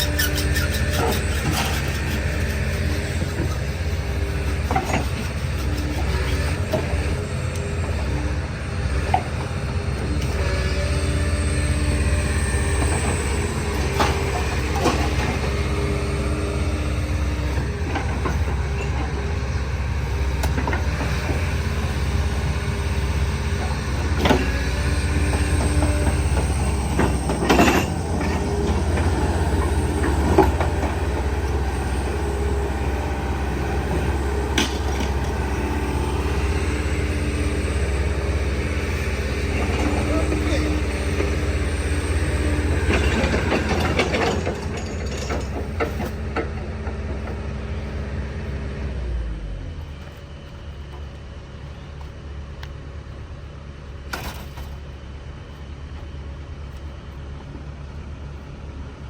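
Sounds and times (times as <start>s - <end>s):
scrap metal clanking: 0.0s - 7.0s
heavy machinery engine rumbling: 0.0s - 59.0s.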